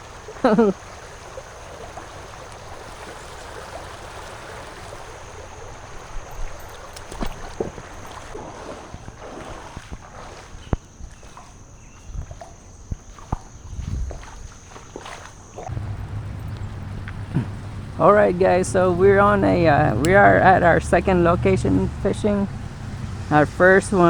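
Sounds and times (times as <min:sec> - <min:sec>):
creek water running: 0:00.0 - 0:24.0
knocks and splashes: 0:00.0 - 0:24.0
low thumps: 0:15.7 - 0:23.7.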